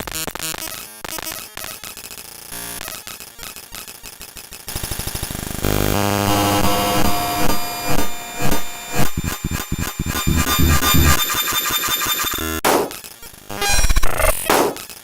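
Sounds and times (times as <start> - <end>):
harsh chopped electronic noise: 5.7 - 15.0.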